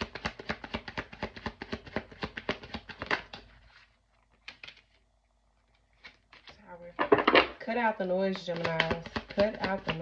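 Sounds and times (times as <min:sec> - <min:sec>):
cards tapping: 0:00.0 - 0:03.6, 0:04.3 - 0:05.0, 0:08.3 - 0:10.0
cards being shuffled: 0:00.0 - 0:06.7, 0:08.4 - 0:10.0.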